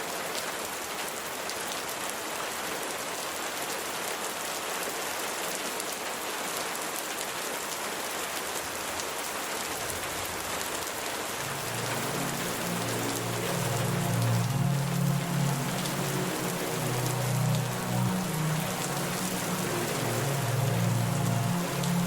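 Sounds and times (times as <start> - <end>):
rain drops pattering: 0.0 - 22.0
low sustained musical tones: 11.4 - 22.0.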